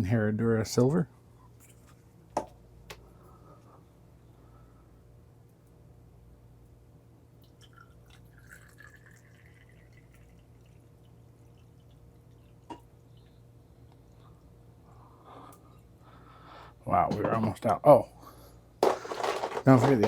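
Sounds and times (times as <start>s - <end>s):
liquid pouring from a bottle: 7.4s - 12.0s.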